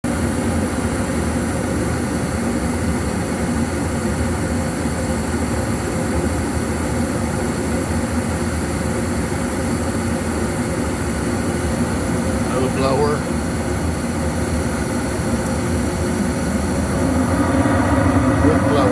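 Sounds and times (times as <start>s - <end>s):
furnace burner and fan hum: 0.0s - 18.9s
low drone: 14.4s - 18.9s.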